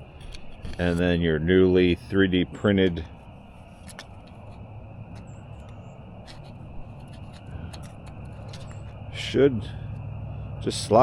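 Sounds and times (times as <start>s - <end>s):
outdoor background noise: 0.0s - 11.0s
plastic part clicks and scrapes: 0.2s - 1.1s, 3.8s - 9.0s.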